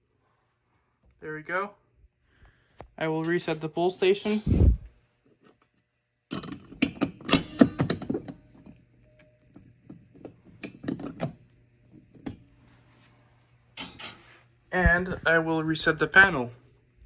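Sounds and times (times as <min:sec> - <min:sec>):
fire alarm pull station clicks: 0:06.3 - 0:11.4.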